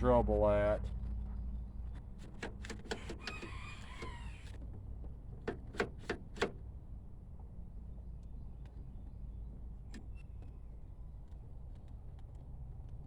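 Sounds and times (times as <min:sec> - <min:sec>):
plastic squeak: 0:02.2 - 0:04.8.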